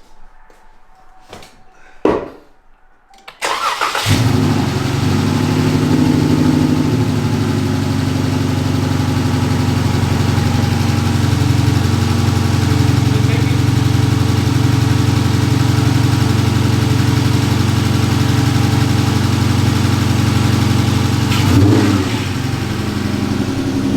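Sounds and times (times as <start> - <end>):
engine starter cranking: 3.3 - 4.6
car engine idling: 3.4 - 23.9.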